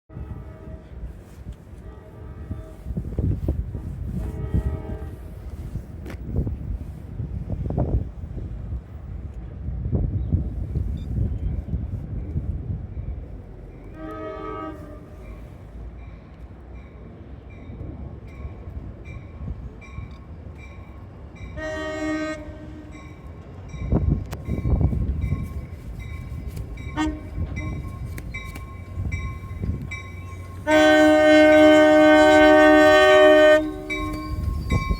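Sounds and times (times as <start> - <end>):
train air horn blasts: 0.1 - 1.0, 1.8 - 3.1, 4.1 - 5.5, 13.9 - 15.5, 21.6 - 23.1, 26.8 - 28.1, 30.3 - 34.9
passing train rumbling: 0.1 - 34.9
crossing bell dinging: 15.2 - 34.9.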